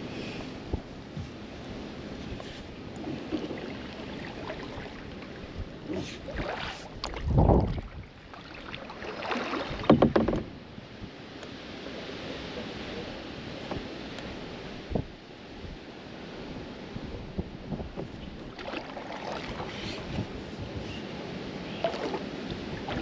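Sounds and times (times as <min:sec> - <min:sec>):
wind buffeting microphone: 0:00.0 - 0:08.3, 0:11.8 - 0:15.9, 0:16.5 - 0:23.0
hiss of wind and water: 0:00.0 - 0:23.0
paddle strokes splashing water: 0:01.2 - 0:10.4, 0:18.0 - 0:21.1, 0:21.7 - 0:23.0.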